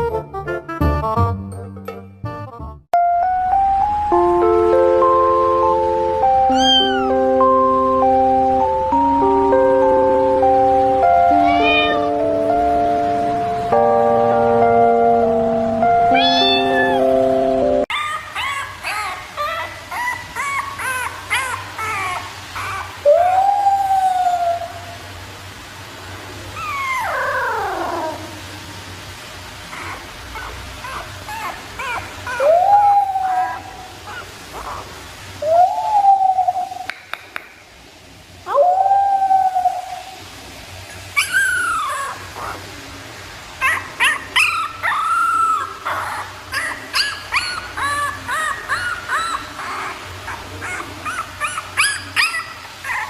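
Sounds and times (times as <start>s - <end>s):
puppy yelp: 6.5s - 7.1s, 11.4s - 12.1s, 16.2s - 17.0s, 17.9s - 23.4s, 26.6s - 28.2s, 29.7s - 34.9s, 41.2s - 42.6s, 43.6s - 53.0s
puppy howling: 6.5s - 7.2s, 11.3s - 12.1s, 16.1s - 17.1s, 17.8s - 25.0s, 26.6s - 28.4s, 29.7s - 36.9s, 41.2s - 42.6s, 43.6s - 53.0s.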